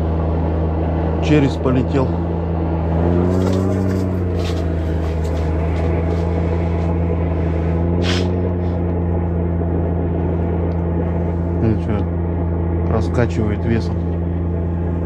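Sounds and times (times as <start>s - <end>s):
low motor hum: 0.0s - 15.0s.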